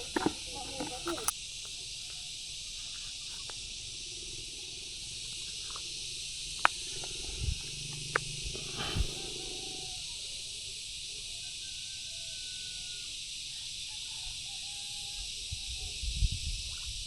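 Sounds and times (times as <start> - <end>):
sharp clicks: 0.0 - 1.8
high-pitched insect chorus: 0.0 - 17.0.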